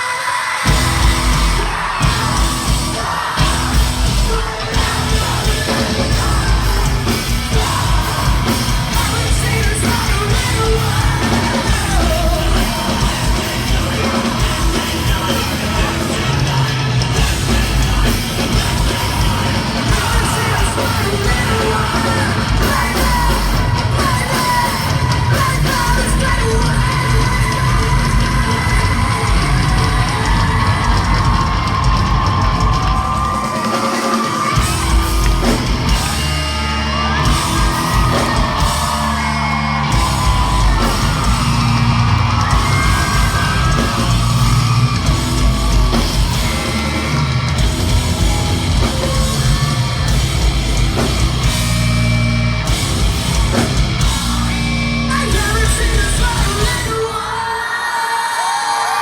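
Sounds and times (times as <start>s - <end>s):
rock band playing live: 0.0s - 57.9s
singer yelling and singing: 0.0s - 59.0s.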